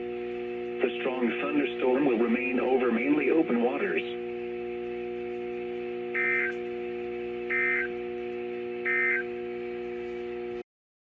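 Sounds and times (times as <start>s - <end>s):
steady low hum: 0.0s - 10.6s
short digital bursts: 6.2s - 6.6s, 7.5s - 7.9s, 8.8s - 9.3s.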